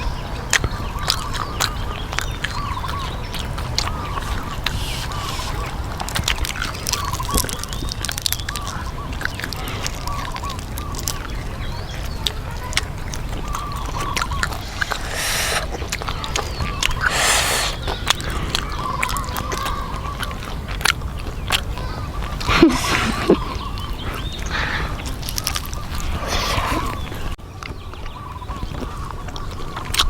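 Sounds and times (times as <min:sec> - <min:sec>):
crunching fried chicken: 0:00.5 - 0:30.0.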